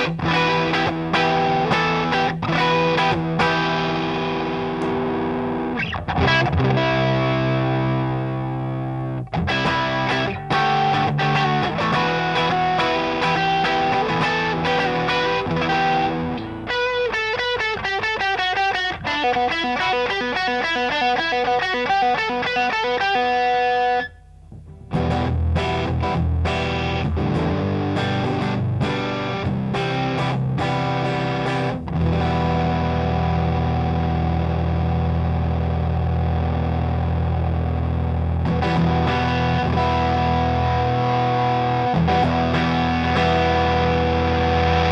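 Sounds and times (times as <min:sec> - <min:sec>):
overdriven electric guitar: 0:00.0 - 0:44.9.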